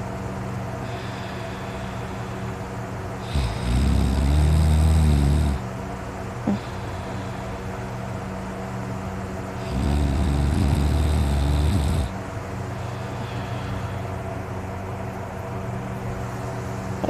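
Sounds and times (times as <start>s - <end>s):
steady low hum: 0.0s - 17.0s
man snoring loudly: 3.2s - 5.6s, 9.6s - 12.2s.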